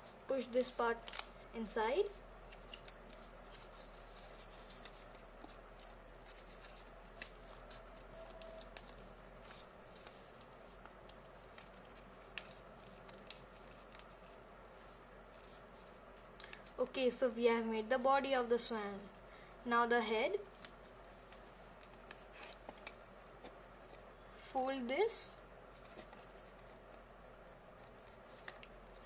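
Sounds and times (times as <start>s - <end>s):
low room hiss: 0.0s - 29.0s
paper crinkling and clicking: 0.4s - 1.3s, 2.5s - 16.8s, 20.5s - 24.0s, 27.8s - 29.0s.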